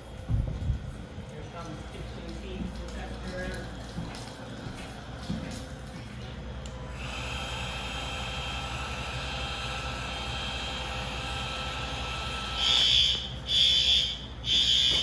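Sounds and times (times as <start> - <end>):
heat gun blower whirring: 6.6 - 15.0
fire alarm horns pulsing: 10.6 - 15.0.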